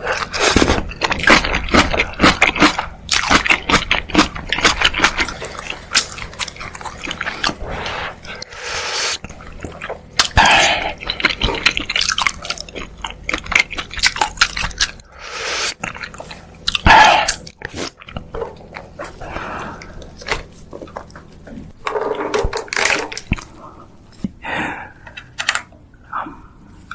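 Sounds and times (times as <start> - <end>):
chewing and mouth clicks: 0.0 - 7.6, 9.2 - 15.1, 15.7 - 21.7
slurping: 0.0 - 21.2.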